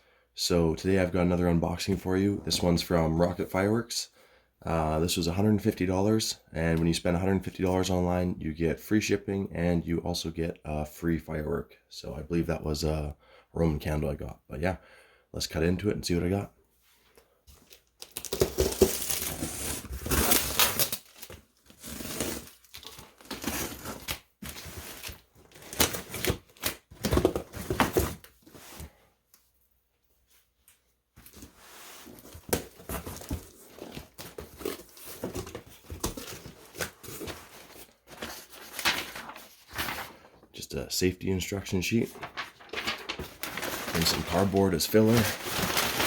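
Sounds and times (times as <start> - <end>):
cardboard and paper rustling: 17.5 - 29.0, 31.2 - 40.4, 41.9 - 46.0.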